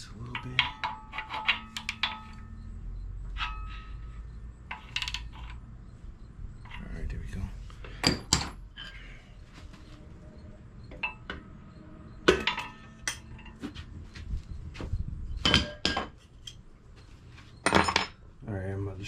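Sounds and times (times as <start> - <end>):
metal engine parts clinking: 0.0 - 9.2, 10.8 - 13.8, 15.4 - 16.7, 17.6 - 18.2.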